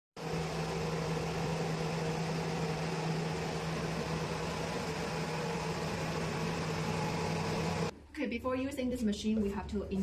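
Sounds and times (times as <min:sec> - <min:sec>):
steady machine hum: 0:00.2 - 0:07.9.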